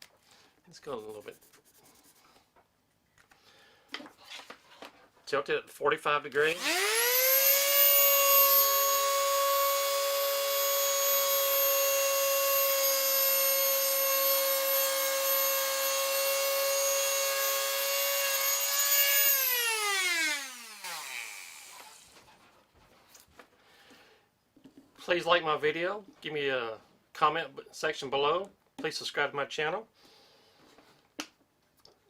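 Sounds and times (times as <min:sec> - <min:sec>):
rotary tool winding down: 0:06.4 - 0:22.2
rotary tool planing wood: 0:06.5 - 0:22.3.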